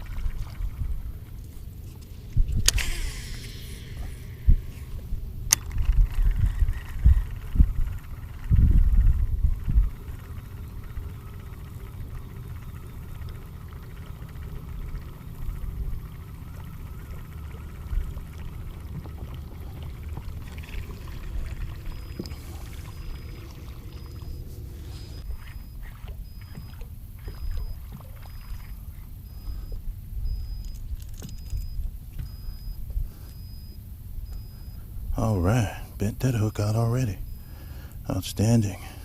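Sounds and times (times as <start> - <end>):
steady low rumble: 0.0 - 39.0
water lapping against boat hull: 0.0 - 39.0
faint high beep: 20.2 - 37.5.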